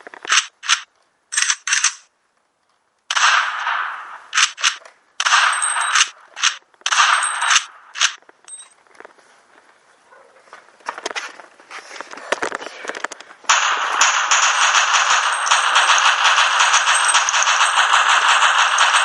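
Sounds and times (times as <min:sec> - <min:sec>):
gunshot-like cracks and bursts: 0:03.1 - 0:08.2, 0:13.5 - 0:19.0.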